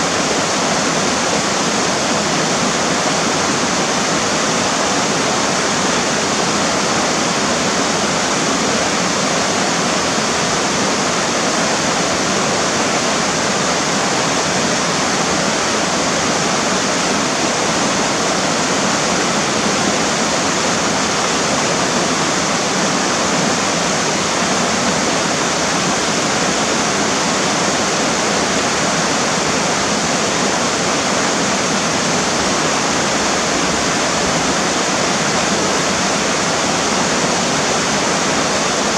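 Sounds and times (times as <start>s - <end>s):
river water flowing: 0.0s - 38.9s.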